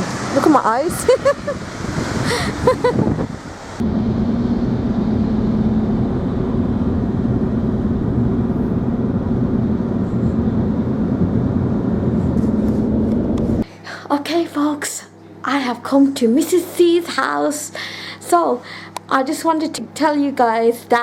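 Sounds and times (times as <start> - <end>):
vehicle running rumble: 0.0 - 13.7.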